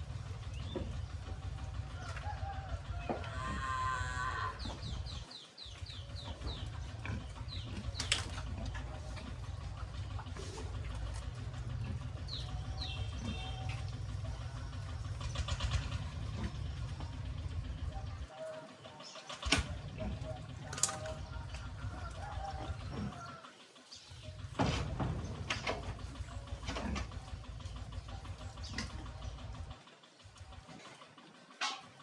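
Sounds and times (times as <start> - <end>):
steady low rumble: 0.0 - 18.3
bird chirping: 12.1 - 13.9.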